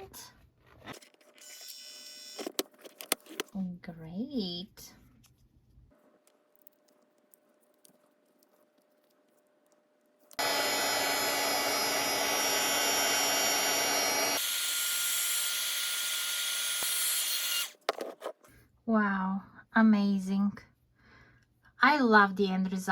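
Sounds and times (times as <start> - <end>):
heat gun blowing with whine: 10.4 - 17.8.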